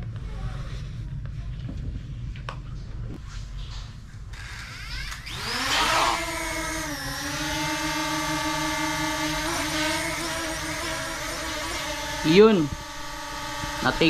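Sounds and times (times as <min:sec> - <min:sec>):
drone propellers whining and buzzing: 0:04.3 - 0:14.0.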